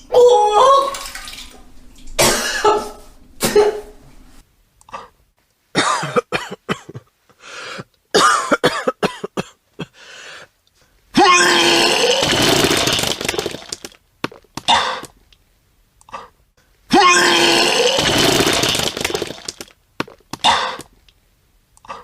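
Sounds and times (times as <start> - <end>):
person retching and gagging: 2.2 - 3.8, 11.2 - 15.2, 16.9 - 21.0
person coughing: 2.2 - 4.0, 5.8 - 7.1, 8.2 - 10.0, 20.4 - 20.9.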